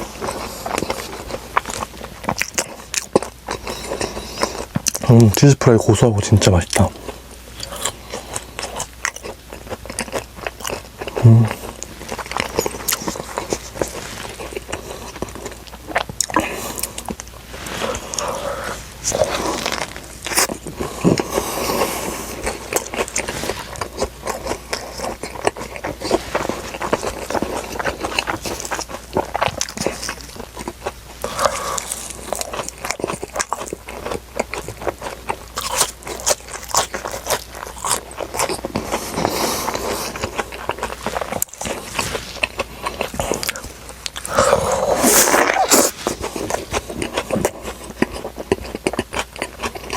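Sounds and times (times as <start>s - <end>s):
person chewing crunchy food: 0.0s - 49.9s.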